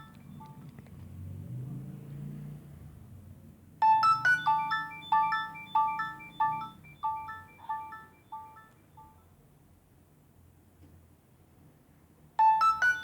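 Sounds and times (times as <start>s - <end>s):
bell-like phone ringtone melody: 0.0s - 0.6s, 3.8s - 9.2s, 12.4s - 13.0s.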